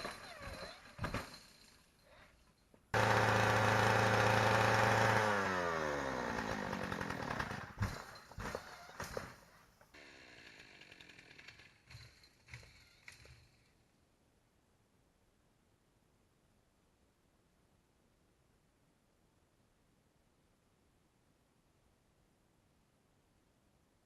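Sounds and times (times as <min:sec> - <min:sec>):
faint motor hum: 0:03.0 - 0:07.6
electric motor whining: 0:03.0 - 0:07.8.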